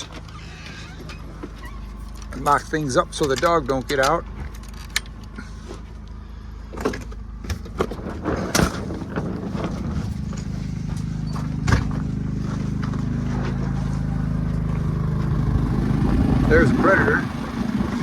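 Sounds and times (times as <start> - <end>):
generator humming: 0.0 - 18.0
footsteps: 9.0 - 15.4.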